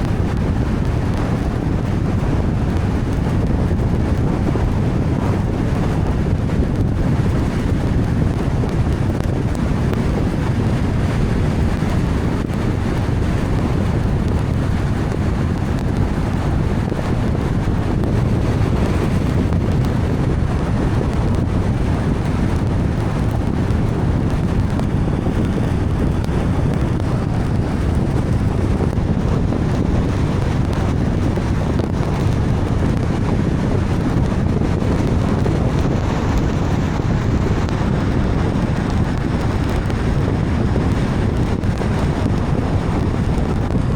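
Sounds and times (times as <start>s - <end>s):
rain on car: 0.0s - 43.9s
tyres on wet road: 0.4s - 43.4s.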